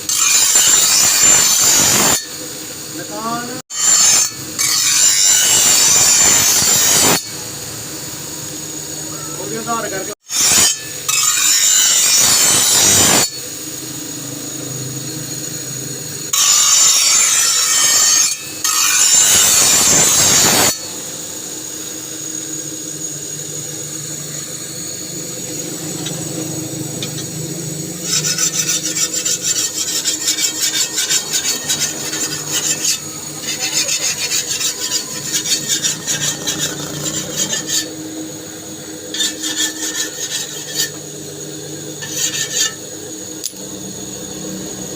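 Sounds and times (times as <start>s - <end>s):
file scraping on steel: 0.0s - 2.4s, 3.1s - 7.4s, 9.4s - 13.5s, 16.2s - 21.0s, 26.9s - 43.6s.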